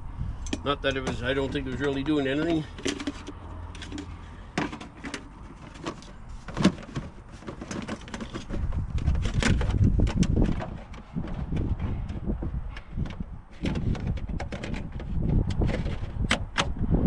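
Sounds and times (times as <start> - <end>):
low rumble: 0.0 - 1.8
parts clicking and knocking: 0.4 - 16.8.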